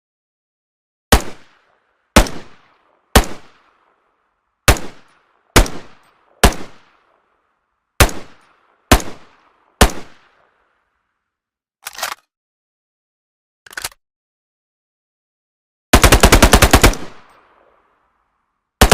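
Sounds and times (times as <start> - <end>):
rifle single shots: 1.1 - 4.0, 4.6 - 7.3, 8.0 - 10.6, 15.9 - 17.8.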